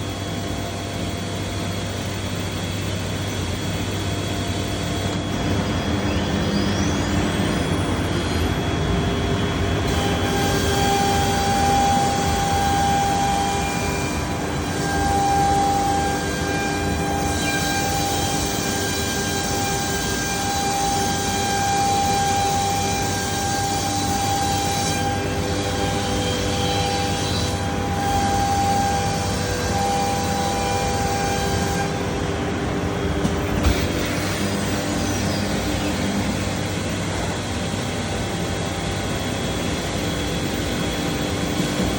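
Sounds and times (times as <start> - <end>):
high spindle whine: 0.0 - 41.9
router milling wood: 9.9 - 36.8.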